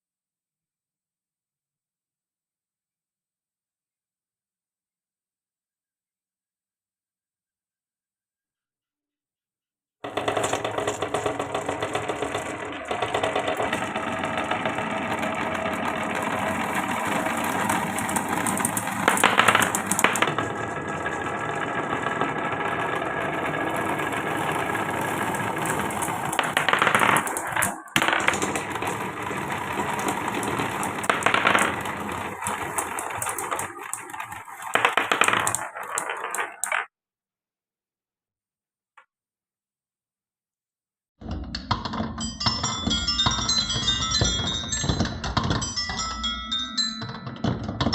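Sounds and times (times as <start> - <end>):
marbles rattling down wooden run: 10.0 - 36.9, 41.6 - 47.9.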